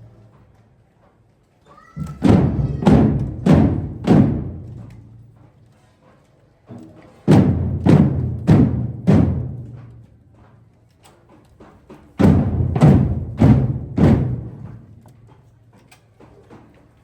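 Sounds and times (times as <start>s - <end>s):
deep ringing drum strikes: 2.2s - 5.1s, 7.3s - 9.9s, 12.2s - 15.0s.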